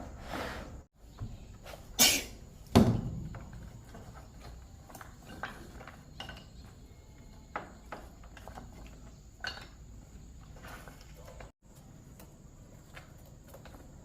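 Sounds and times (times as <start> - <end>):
objects knocking and clinking: 2.7 - 10.0.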